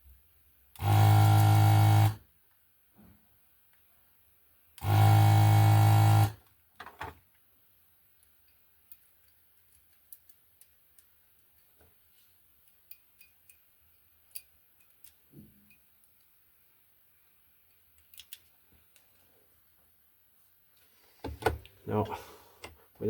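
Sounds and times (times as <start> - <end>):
desoldering pump buzzing: 0.8 - 2.2, 4.8 - 6.4.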